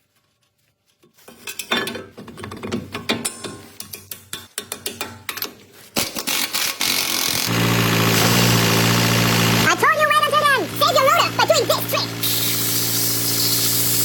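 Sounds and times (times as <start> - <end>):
tools and metal parts clanking: 1.2 - 6.4
steady mechanical noise: 6.5 - 14.0.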